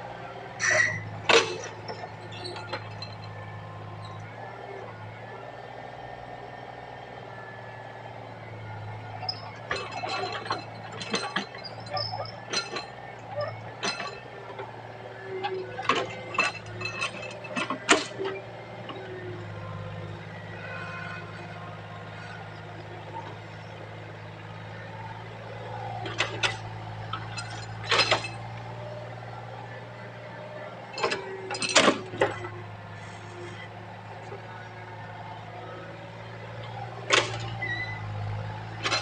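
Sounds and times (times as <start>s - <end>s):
excavator diesel engine running: 0.0s - 39.0s
metallic clanks and knocks: 0.6s - 3.4s, 9.5s - 14.8s, 15.4s - 19.1s, 26.0s - 28.7s, 30.8s - 32.6s, 37.0s - 37.9s, 38.5s - 39.0s.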